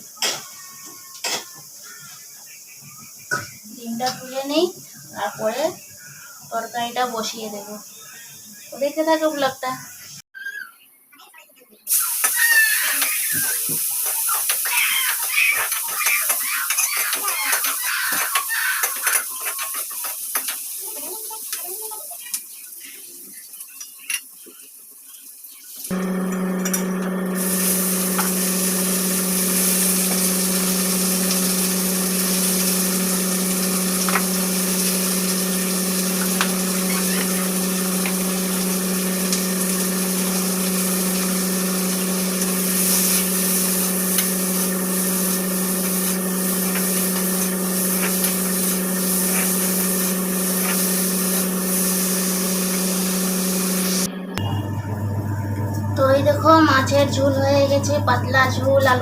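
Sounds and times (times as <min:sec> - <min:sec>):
electric motor humming: 0:25.9 - 0:59.0.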